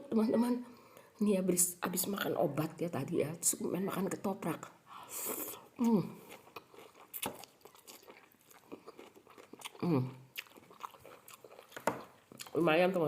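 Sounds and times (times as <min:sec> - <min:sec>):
person chewing crunchy food: 0:05.2 - 0:12.6.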